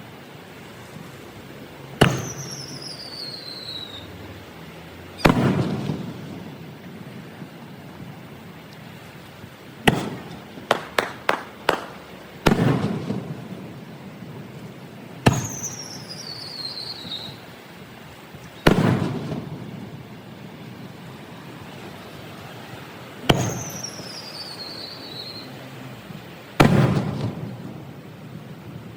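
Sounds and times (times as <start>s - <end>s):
firework shells bursting: 2.0s - 3.3s, 5.2s - 6.3s, 9.8s - 13.9s, 15.2s - 16.9s, 18.6s - 19.8s, 23.2s - 24.2s, 26.6s - 27.5s
firework cracks: 2.0s - 3.8s, 5.2s - 6.7s, 9.8s - 17.4s, 18.5s - 20.0s, 23.2s - 25.2s, 26.6s - 28.0s
falling whistle: 2.1s - 4.1s, 15.4s - 17.4s, 23.4s - 25.6s.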